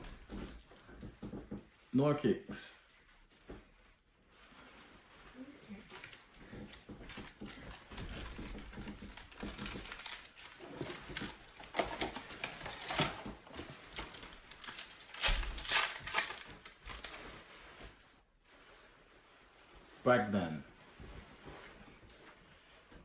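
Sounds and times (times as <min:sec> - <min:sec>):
trading cards and wrappers rustling: 0:04.4 - 0:19.6.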